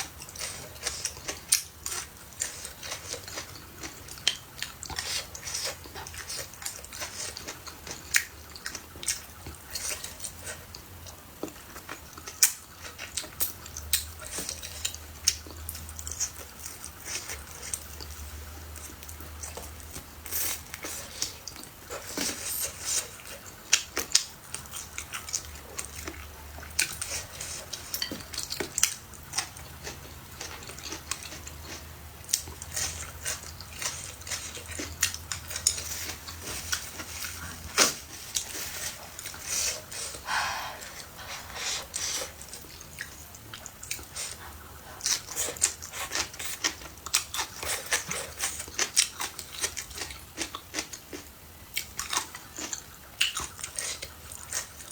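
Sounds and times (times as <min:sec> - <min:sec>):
chewing: 0:00.0 - 0:54.9
low steady hum: 0:24.5 - 0:46.4.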